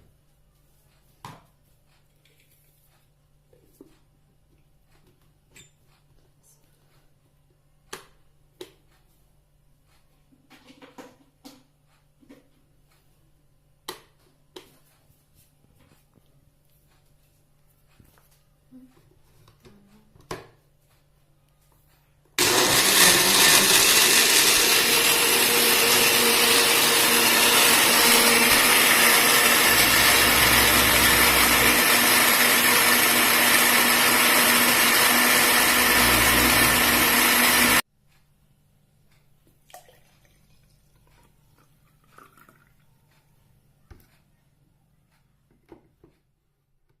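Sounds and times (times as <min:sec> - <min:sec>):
electric blender running: 0:22.4 - 0:37.8.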